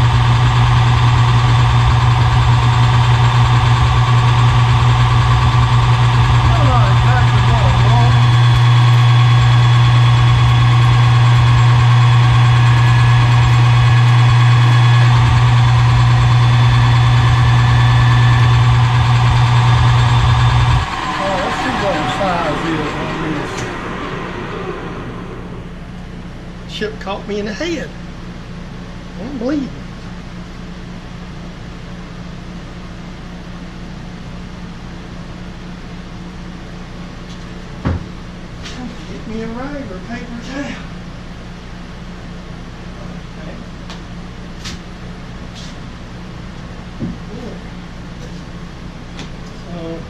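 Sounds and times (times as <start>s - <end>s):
lathe humming: 0.0s - 26.8s.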